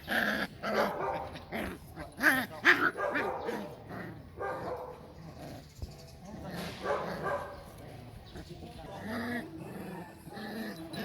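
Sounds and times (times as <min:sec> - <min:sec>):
dogs barking and yipping: 0:00.0 - 0:08.2, 0:08.8 - 0:11.0.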